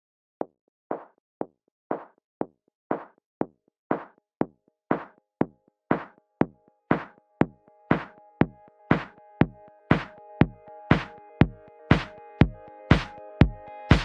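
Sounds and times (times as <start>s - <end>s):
percussive music beat: 0.9s - 1.1s, 1.9s - 2.2s, 2.9s - 3.2s, 3.9s - 4.2s, 4.9s - 5.2s, 5.9s - 14.0s.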